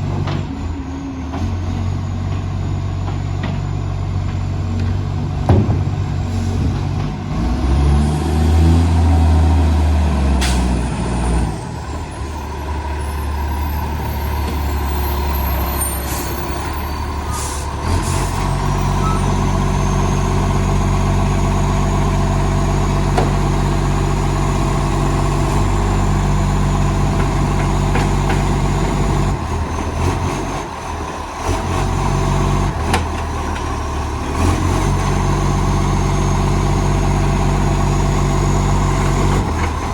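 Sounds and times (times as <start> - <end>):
diesel truck engine revving: 0.0 - 39.9
air brakes hissing: 10.4 - 11.0, 11.6 - 19.8.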